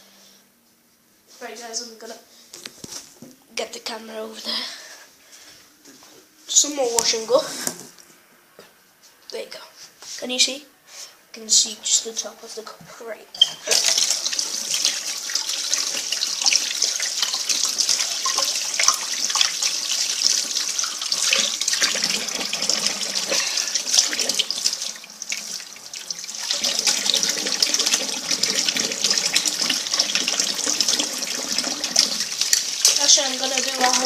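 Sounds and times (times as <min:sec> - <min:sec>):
tap water running into sink: 0:13.4 - 0:34.0.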